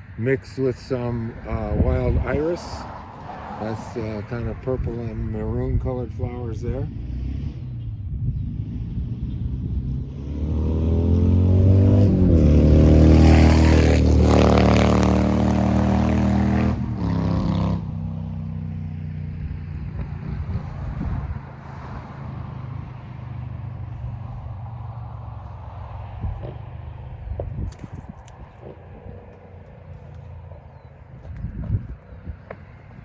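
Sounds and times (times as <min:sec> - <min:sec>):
road rumble: 0:00.0 - 0:33.0
car engine revving: 0:06.2 - 0:27.8.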